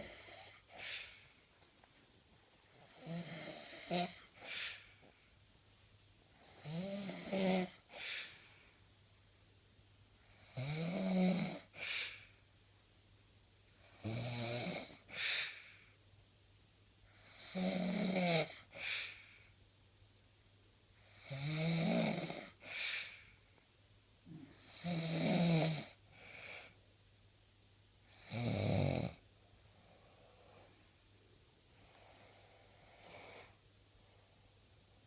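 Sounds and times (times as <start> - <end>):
person snoring: 0.0 - 1.2, 2.7 - 5.0, 6.4 - 8.4, 10.3 - 12.3, 17.2 - 19.2, 21.1 - 23.2, 24.5 - 26.7.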